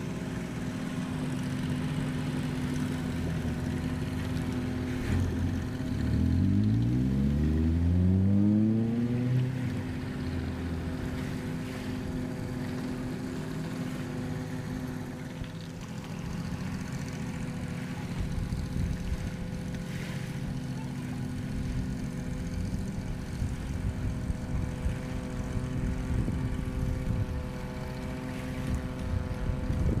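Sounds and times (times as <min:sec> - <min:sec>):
boat engine droning: 0:00.0 - 0:30.0.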